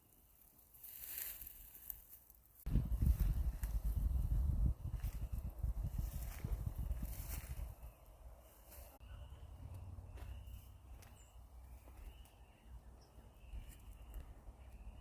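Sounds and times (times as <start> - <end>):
low wind rumble on microphone: 2.7 - 8.4.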